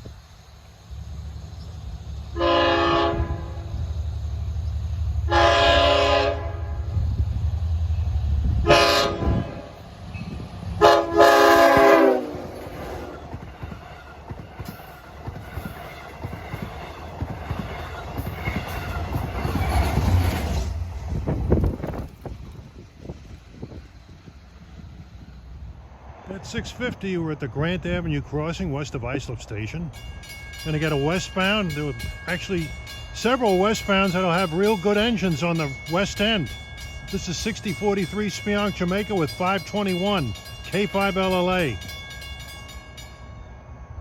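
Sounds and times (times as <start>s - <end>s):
locomotive engine rumble: 0.0s - 43.7s
locomotive air horn blasts: 2.4s - 3.8s, 5.2s - 7.0s, 8.6s - 9.8s, 10.8s - 13.2s
train wheels clattering on rails: 9.5s - 25.4s.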